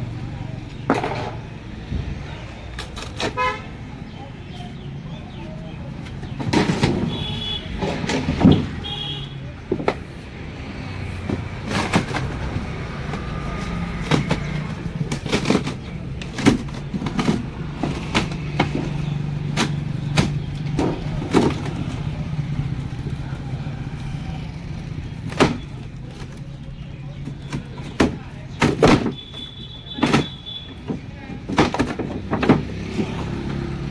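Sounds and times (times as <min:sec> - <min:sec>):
knocks and bangs breaking refrigerator: 0:06.2 - 0:23.1, 0:24.9 - 0:26.4, 0:27.1 - 0:33.9.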